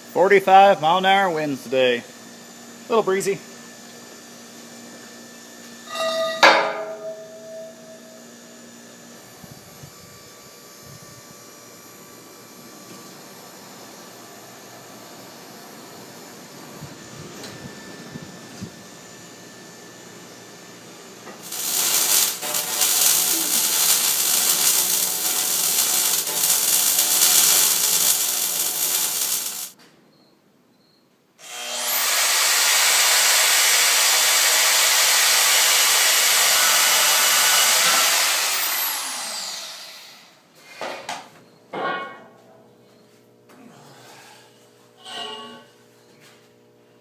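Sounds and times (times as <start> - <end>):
power tool grinding steel: 5.9 - 8.3, 21.4 - 29.8, 31.4 - 40.1.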